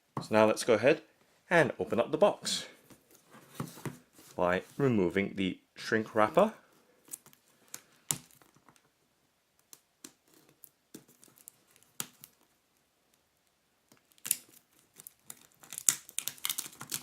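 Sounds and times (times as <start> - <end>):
plastic shrink wrap crackling: 13.9 - 17.0.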